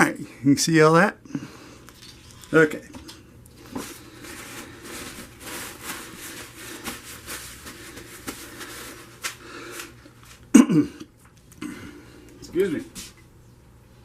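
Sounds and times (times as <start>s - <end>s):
person throat noise: 10.5s - 12.0s.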